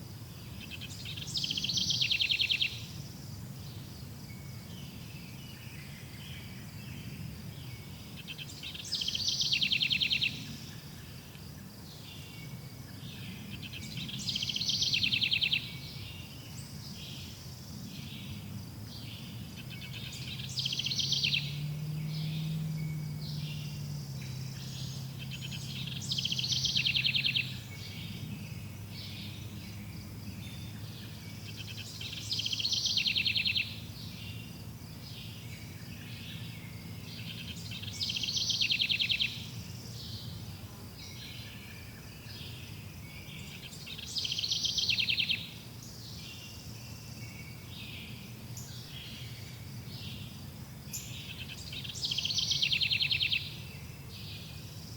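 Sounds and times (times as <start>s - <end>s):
insects chirring: 0.0s - 54.9s
songbird trilling: 0.6s - 2.9s, 8.2s - 10.5s, 19.6s - 28.2s, 30.5s - 34.4s, 37.2s - 39.5s, 43.2s - 45.6s, 50.9s - 54.6s.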